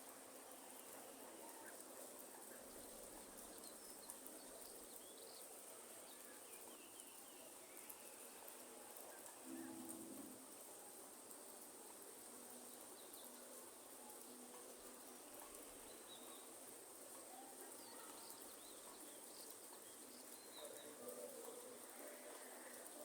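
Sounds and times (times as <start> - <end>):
light rain hiss: 0.0 - 23.0.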